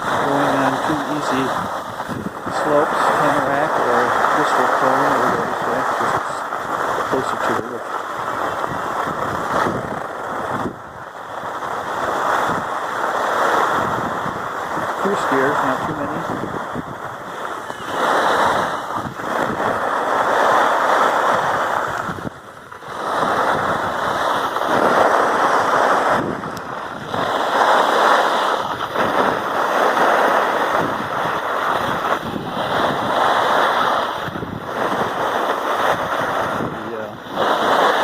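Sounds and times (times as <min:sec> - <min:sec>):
wind on microphone: 0:00.0 - 0:38.0
skis scraping over snow: 0:36.8 - 0:38.0.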